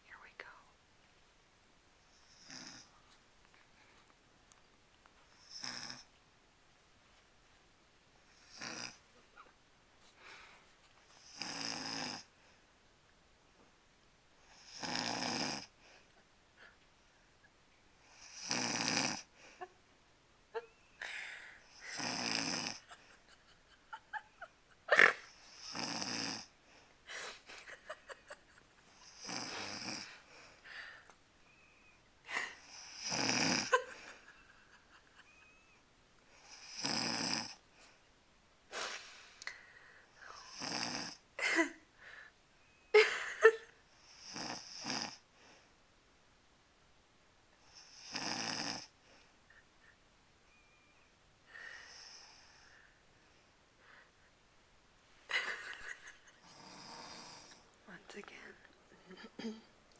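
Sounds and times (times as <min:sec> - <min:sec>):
person snoring: 0:02.3 - 0:02.9, 0:05.4 - 0:06.1, 0:08.4 - 0:09.0, 0:11.2 - 0:12.3, 0:14.5 - 0:15.7, 0:18.1 - 0:19.3, 0:21.0 - 0:23.1, 0:24.9 - 0:26.5, 0:29.0 - 0:30.3, 0:32.3 - 0:34.4, 0:36.4 - 0:37.6, 0:40.2 - 0:41.2, 0:44.1 - 0:45.2, 0:47.7 - 0:48.9, 0:56.4 - 0:57.6.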